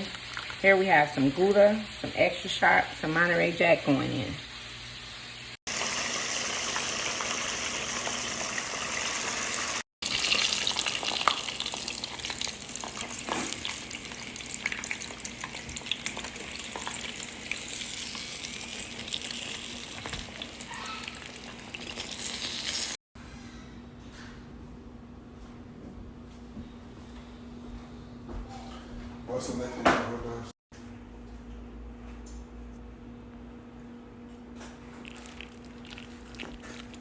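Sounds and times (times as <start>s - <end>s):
chicken frying in hot oil: 4.0s - 23.0s.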